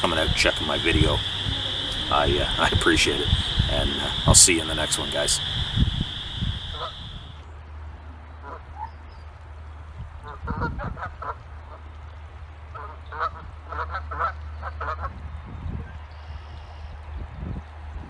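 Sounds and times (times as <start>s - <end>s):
geese honking: 0.0s - 7.4s
steady low hum: 0.0s - 7.4s.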